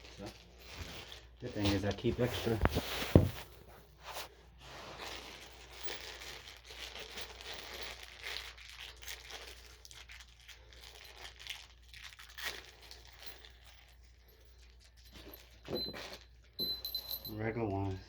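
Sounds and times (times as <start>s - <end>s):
rustling bag of hardware: 0.0s - 18.0s.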